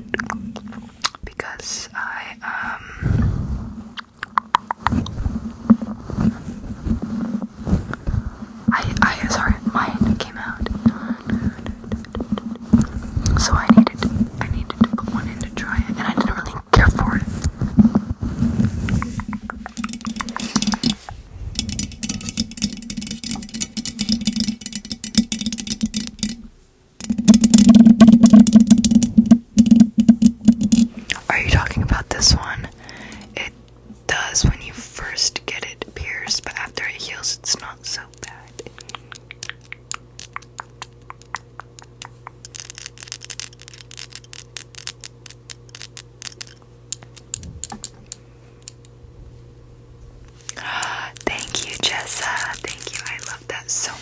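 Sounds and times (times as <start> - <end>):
stomach growling: 0.0 - 1.0, 18.7 - 22.4, 38.6 - 42.6
stomach gurgle: 0.0 - 1.2, 7.7 - 21.8
steady low hum: 0.0 - 54.0
light clicks and taps: 35.4 - 49.0, 50.3 - 54.0.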